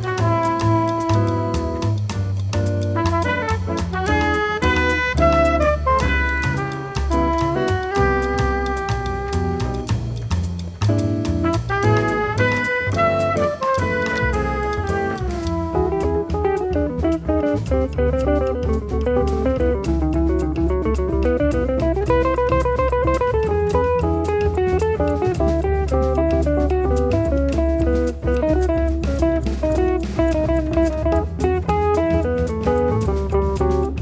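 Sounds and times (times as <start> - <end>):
jazz band playing: 0.0 - 34.0
guitar solo: 3.3 - 9.9, 11.8 - 25.8.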